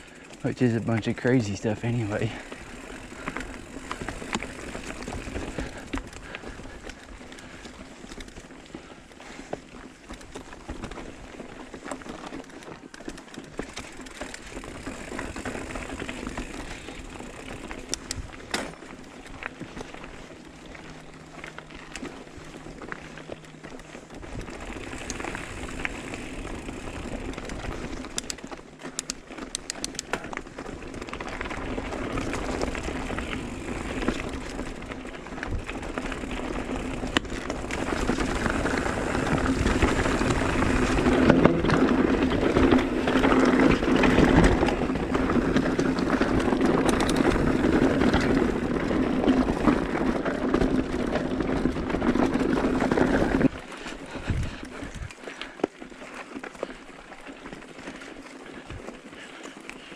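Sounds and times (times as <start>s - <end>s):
bike tyre and frame rattle: 0.0s - 59.9s
sharp ticks: 28.0s - 30.2s.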